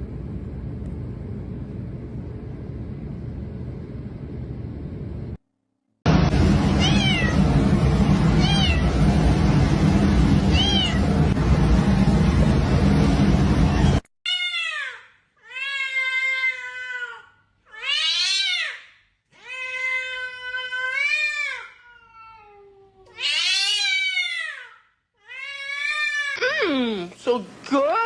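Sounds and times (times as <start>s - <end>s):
loud rushing noise: 6.1s - 14.1s
cat meowing: 6.8s - 7.4s, 19.4s - 24.6s.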